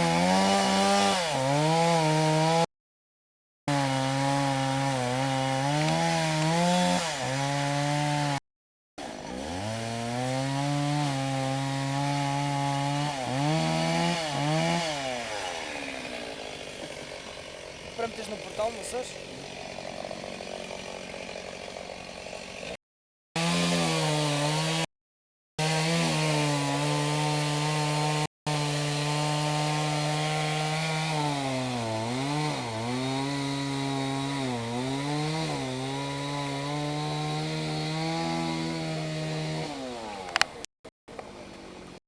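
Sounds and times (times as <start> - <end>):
chainsaw cutting wood: 0.0 - 2.7, 3.7 - 8.4, 9.0 - 22.8, 23.4 - 24.9, 25.6 - 42.0.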